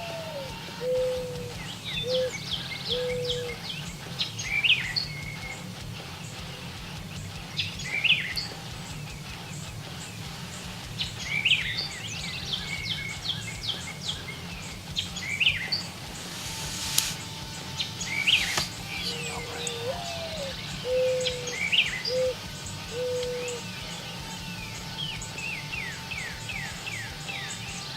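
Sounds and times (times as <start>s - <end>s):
steady low hum: 0.0s - 25.3s
quick bird chirps: 18.0s - 22.3s
songbird repeating song phrase: 18.1s - 22.1s.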